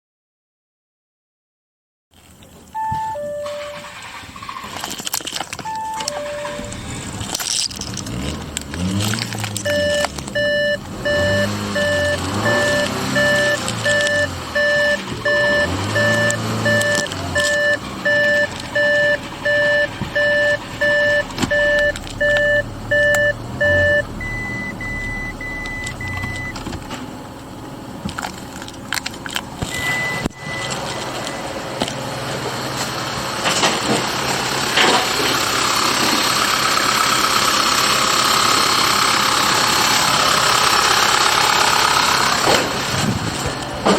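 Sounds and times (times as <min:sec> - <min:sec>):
car engine starting and running: 0:02.2 - 0:43.9
higher short beeps: 0:02.8 - 0:04.0, 0:05.7 - 0:07.0, 0:09.7 - 0:26.6, 0:29.7 - 0:31.6
dashboard warning chime beeping: 0:02.8 - 0:04.2, 0:05.6 - 0:07.0, 0:09.6 - 0:26.6, 0:29.7 - 0:31.7
low whir: 0:05.7 - 0:27.2.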